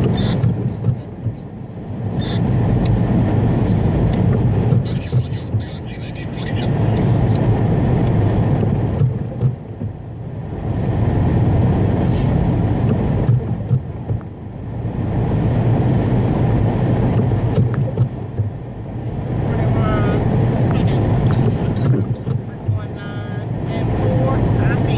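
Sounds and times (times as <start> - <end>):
car engine and tyres rumbling: 0.0 - 24.9.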